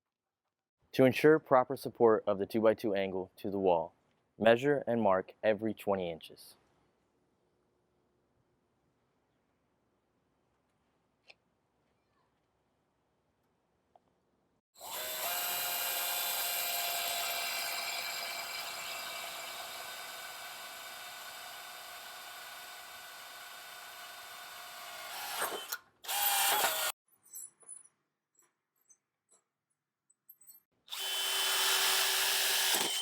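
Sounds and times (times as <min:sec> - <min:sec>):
power drill whining: 0:14.8 - 0:27.0, 0:30.9 - 0:33.0.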